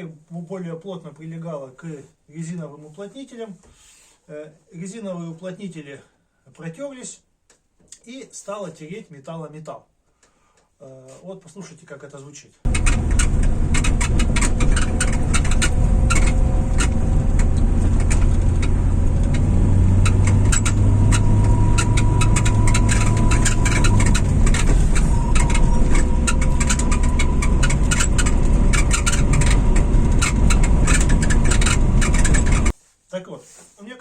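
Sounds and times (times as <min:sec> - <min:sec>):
car engine and road noise: 0:12.7 - 0:32.7
car tailgate creaking and clicking: 0:12.7 - 0:32.7.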